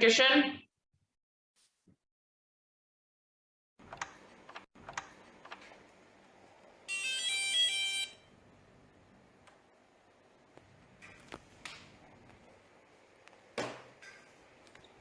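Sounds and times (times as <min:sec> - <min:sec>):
electronic alarm jingle: 0:06.9 - 0:08.3.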